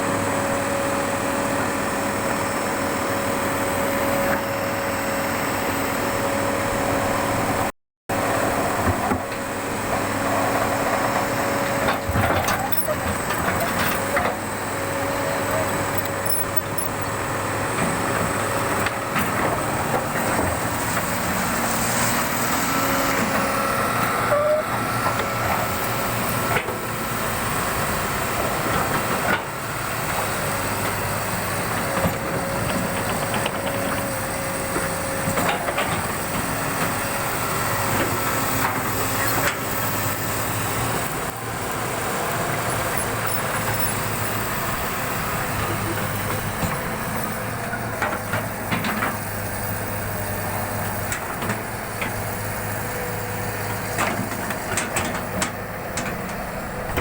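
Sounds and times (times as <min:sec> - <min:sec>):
excavator diesel engines running: 0:00.0 - 0:57.0.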